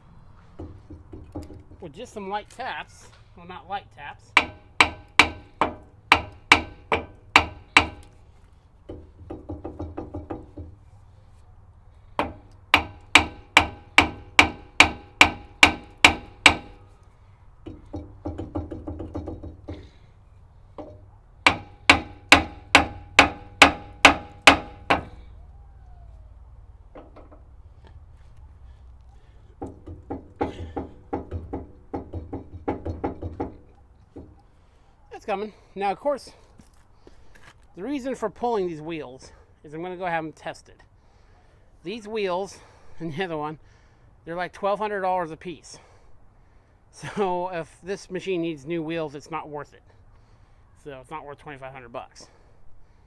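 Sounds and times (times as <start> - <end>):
hammer ringing blows on metal: 4.4 - 8.0, 21.5 - 25.2.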